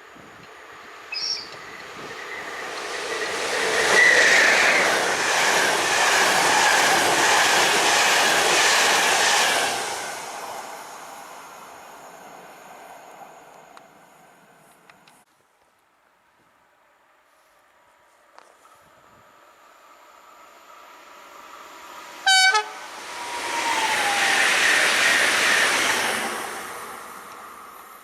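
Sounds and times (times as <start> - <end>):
train passing with wheel clatter: 0.0 - 15.2, 18.2 - 28.0.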